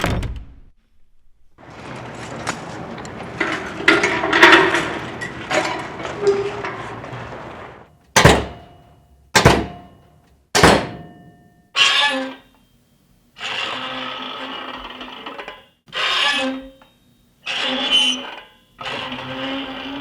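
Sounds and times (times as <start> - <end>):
door hinges creaking: 2.4 - 8.7, 10.6 - 11.1
heavy door slams: 3.6 - 8.7, 9.4 - 10.0, 10.6 - 11.3.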